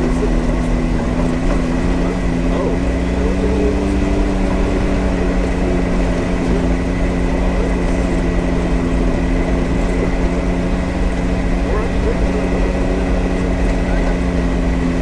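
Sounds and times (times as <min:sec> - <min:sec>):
low road and drivetrain rumble: 0:00.0 - 0:15.0
vehicle engine running: 0:00.0 - 0:15.0.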